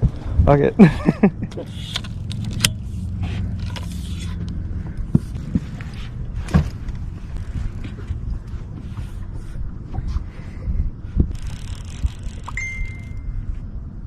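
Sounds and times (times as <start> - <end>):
gear knocking and clicking: 11.2 - 13.2.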